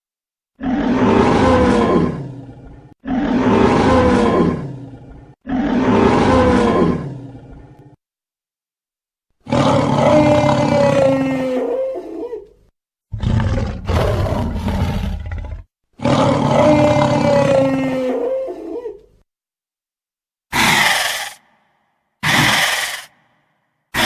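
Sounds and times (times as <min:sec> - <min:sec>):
dinosaur roars: 0:00.6 - 0:08.0, 0:09.4 - 0:12.1, 0:13.1 - 0:19.0.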